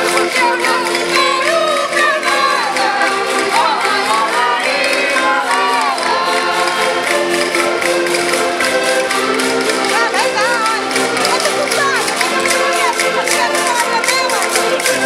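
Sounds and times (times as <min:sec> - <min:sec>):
women singing together: 0:00.0 - 0:07.2
button accordion chords: 0:00.0 - 0:15.0.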